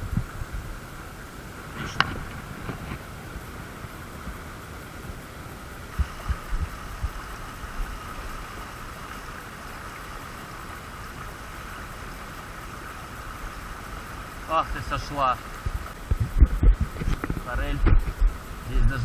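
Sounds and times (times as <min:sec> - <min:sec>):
stream rushing over stones: 0:00.0 - 0:19.0
dull low thumps: 0:15.6 - 0:19.0.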